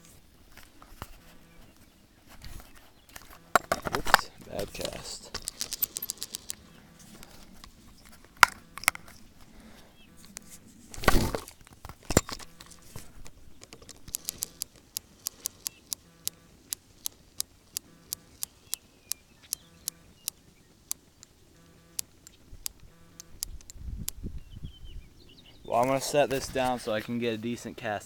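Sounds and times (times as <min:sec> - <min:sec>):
fishing reel ticking: 0:04.7 - 0:09.1, 0:13.7 - 0:23.8
rustling bump: 0:10.2 - 0:13.3.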